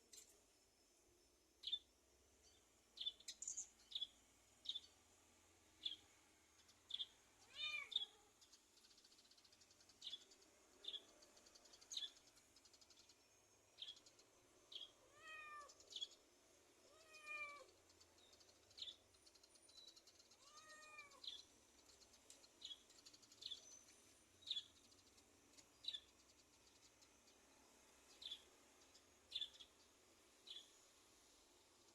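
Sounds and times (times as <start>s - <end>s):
cat meowing: 7.4s - 8.1s, 15.0s - 15.8s, 16.9s - 17.7s, 20.4s - 21.3s.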